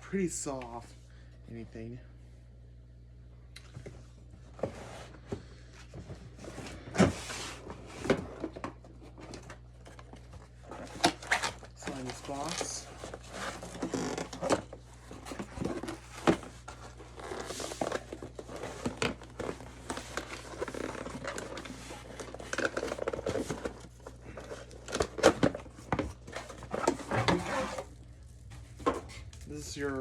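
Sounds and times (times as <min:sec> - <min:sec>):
cardboard packaging rustling: 0:06.3 - 0:30.0.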